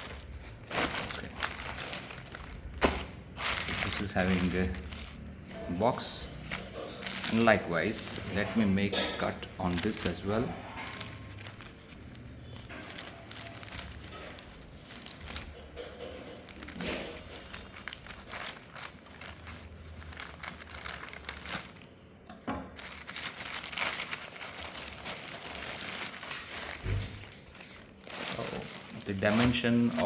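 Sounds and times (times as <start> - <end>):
scissors cutting plastic: 0.0 - 21.8
plastic packaging crinkling and tearing: 0.0 - 22.2, 22.8 - 30.0.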